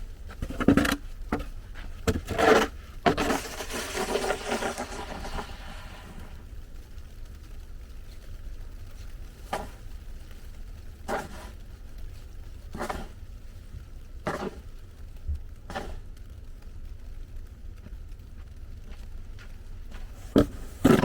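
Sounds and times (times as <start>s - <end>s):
crunching scrapes: 0.0s - 6.6s, 7.9s - 10.2s, 11.0s - 13.3s, 14.2s - 14.8s, 17.8s - 21.0s.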